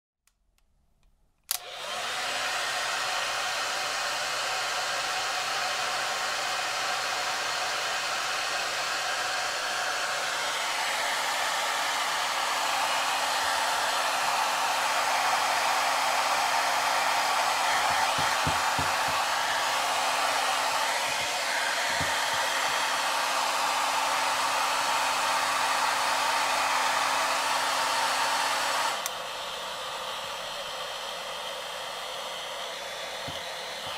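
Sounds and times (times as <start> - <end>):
switch click: 0.3 - 1.7
hair dryer blowing: 1.5 - 33.9.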